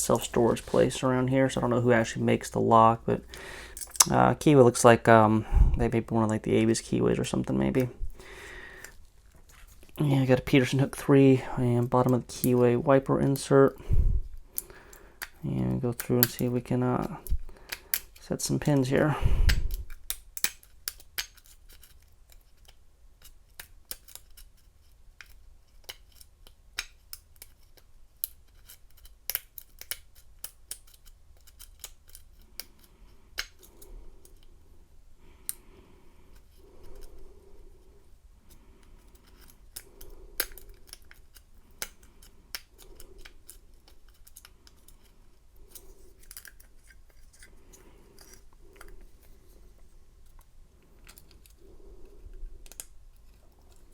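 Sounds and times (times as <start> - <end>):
lock pick clicking and scraping: 19.5 - 34.5, 38.4 - 53.9.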